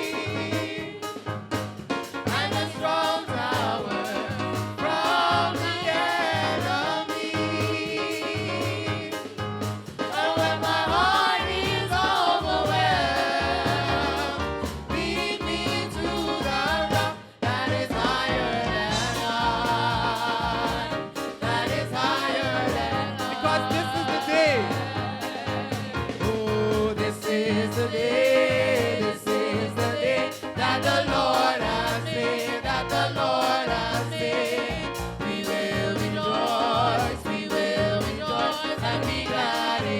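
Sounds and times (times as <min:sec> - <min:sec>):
group singing gospel song: 0:00.0 - 0:39.9
instrumental accompaniment: 0:00.0 - 0:39.9.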